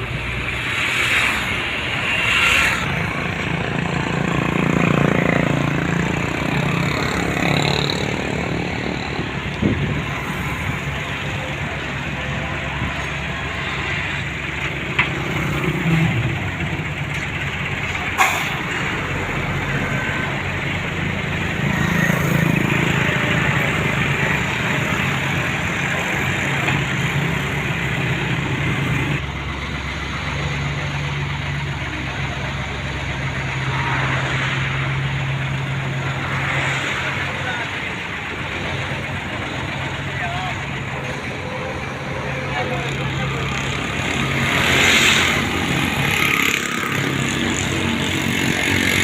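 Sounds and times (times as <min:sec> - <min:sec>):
diesel engines running: 0:00.0 - 0:49.0.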